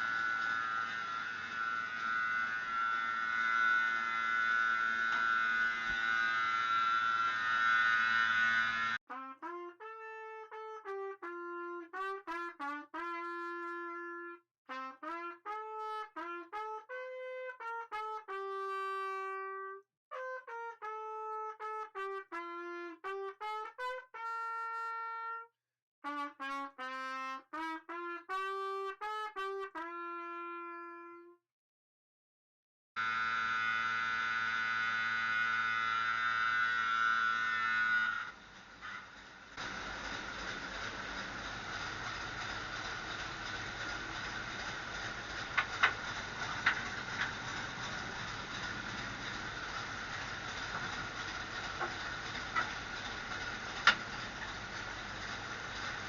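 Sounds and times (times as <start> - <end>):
noisy mechanical sound: 0.0 - 9.0, 33.0 - 56.0
solo trumpet melody: 0.0 - 31.4.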